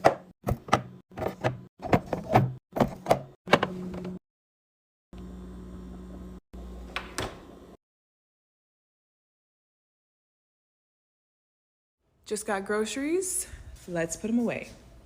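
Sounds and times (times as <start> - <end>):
kitchen items knocking and clacking: 0.0 - 3.7.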